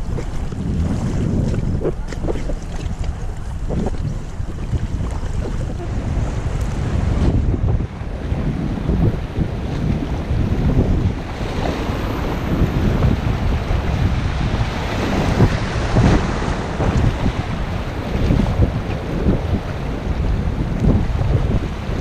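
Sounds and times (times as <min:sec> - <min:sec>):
wind buffeting microphone: 0:00.0 - 0:22.0
river water rushing: 0:10.3 - 0:19.0.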